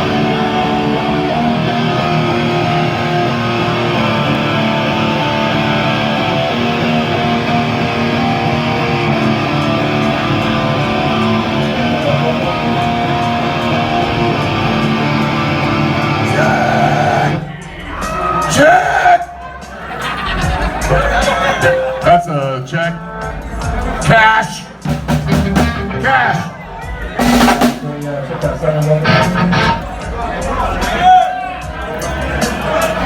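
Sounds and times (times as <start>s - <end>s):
amplified guitar strumming: 0.0s - 17.6s, 28.9s - 30.5s.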